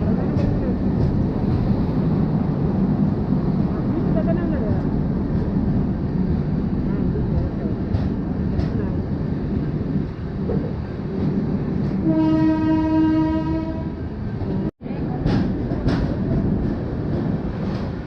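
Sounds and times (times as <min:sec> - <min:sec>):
train coach rumble: 0:00.0 - 0:18.0
train horn: 0:12.0 - 0:14.0.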